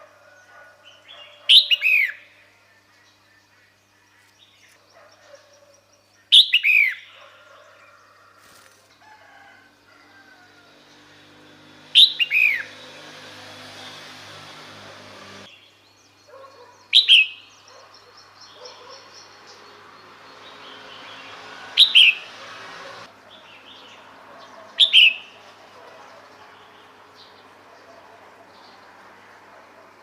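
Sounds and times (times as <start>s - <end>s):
bird calling: 11.8s - 12.9s.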